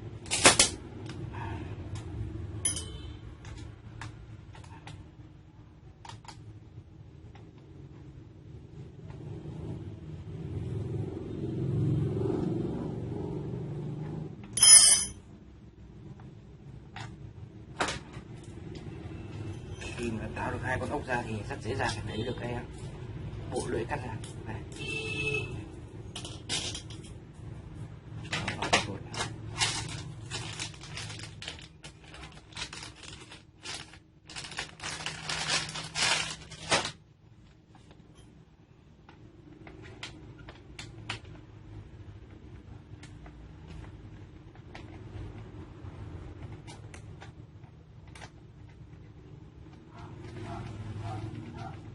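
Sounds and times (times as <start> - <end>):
metal parts clicking and rattling: 2.6 - 3.6, 14.4 - 15.2, 26.1 - 27.2
metal parts shifted on work surface: 14.6 - 15.2
sharp metallic clatter: 14.6 - 15.2.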